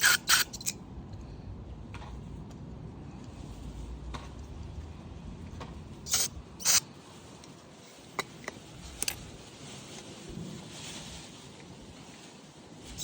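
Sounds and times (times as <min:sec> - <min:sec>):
small metal parts clicking: 0:00.0 - 0:00.8, 0:09.0 - 0:09.2
short hissing sprays: 0:06.1 - 0:06.8
wind rumbling on microphone: 0:08.6 - 0:13.0.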